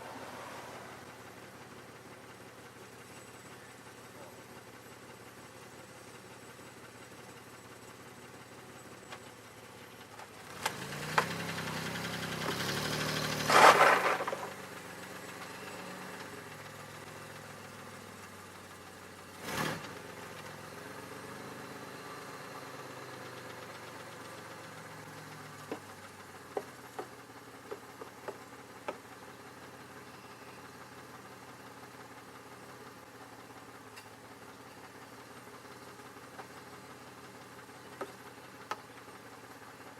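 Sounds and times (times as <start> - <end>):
car engine idling: 0.0 - 39.9.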